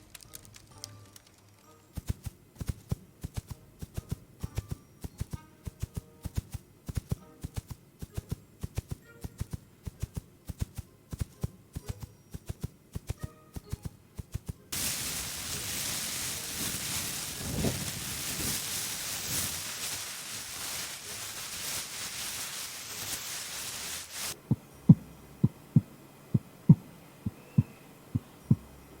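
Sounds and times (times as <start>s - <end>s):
steady hiss: 0.0s - 29.0s
heartbeat thumps: 24.4s - 28.7s.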